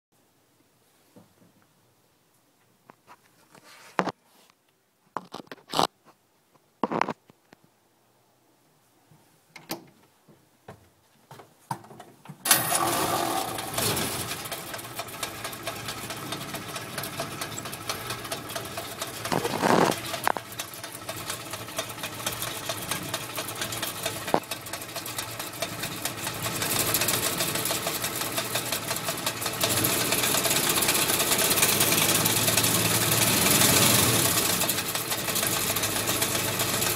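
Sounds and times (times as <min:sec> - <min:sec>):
engine idling with rattle: 0:12.5 - 0:36.9.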